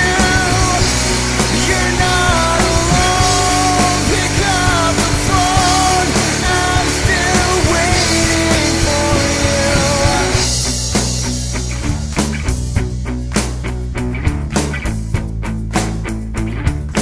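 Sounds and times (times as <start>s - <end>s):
wavering melodic lead line: 0.0s - 10.9s
rock band playing: 0.0s - 17.0s.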